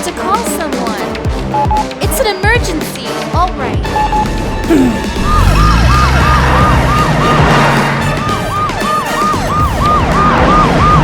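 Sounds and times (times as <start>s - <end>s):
background music: 0.0s - 11.0s
emergency vehicle siren sweeps: 3.8s - 11.0s.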